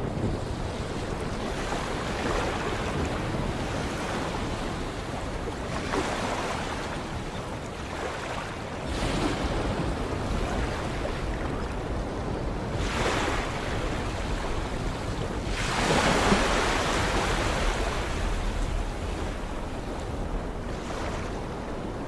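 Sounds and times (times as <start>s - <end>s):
sea waves breaking: 0.0s - 22.0s.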